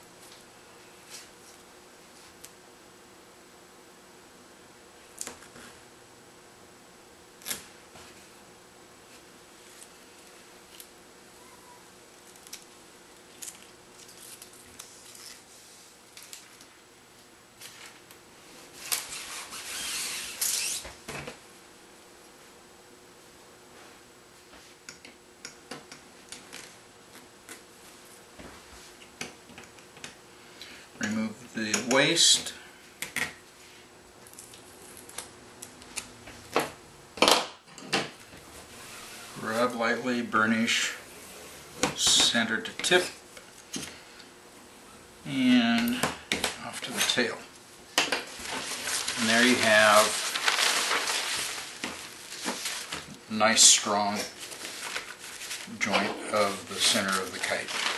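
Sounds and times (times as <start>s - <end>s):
crinkling rustle of sheet: 48.3s - 53.2s, 54.1s - 57.9s.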